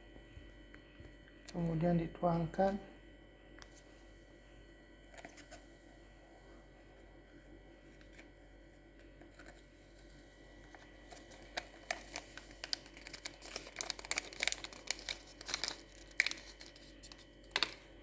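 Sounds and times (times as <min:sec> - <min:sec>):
plastic sachet crinkling: 0:10.6 - 0:17.8.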